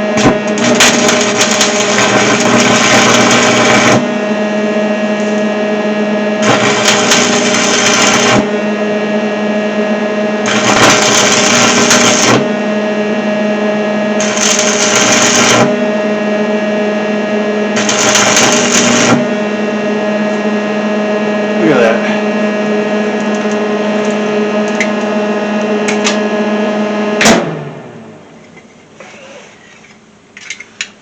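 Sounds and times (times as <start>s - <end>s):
welding arc crackle: 0.0s - 4.2s, 6.4s - 8.6s, 10.4s - 12.7s, 14.2s - 15.9s, 17.7s - 19.5s
welder steady hum: 0.0s - 31.0s.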